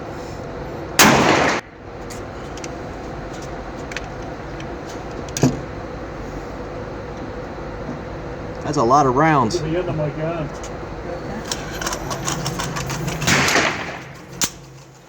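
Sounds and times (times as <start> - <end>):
handgun shot: 1.0 - 1.7, 13.3 - 14.2
quieter gunshot crack: 1.0 - 1.7, 13.3 - 14.2.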